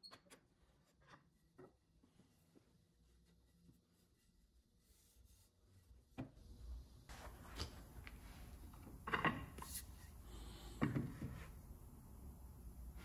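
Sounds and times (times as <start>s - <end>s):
low steady hum: 0.6s - 13.0s
objects knocking and clunking: 8.7s - 9.7s, 10.8s - 11.5s.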